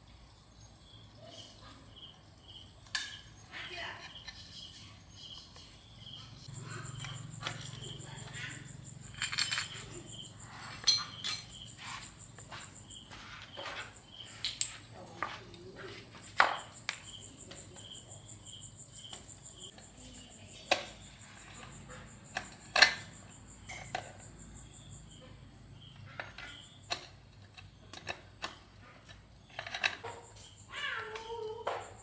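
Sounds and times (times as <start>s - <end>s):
crickets chirring: 0.0s - 32.0s
tools clicking and knocking: 2.8s - 3.4s, 9.0s - 12.5s, 13.6s - 14.9s, 20.6s - 24.4s, 26.0s - 30.6s.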